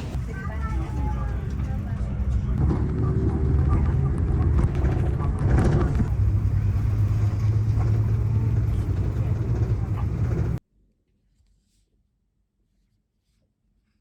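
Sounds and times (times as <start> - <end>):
airliner cabin hum: 0.0 - 10.6
faint voices: 0.0 - 10.6.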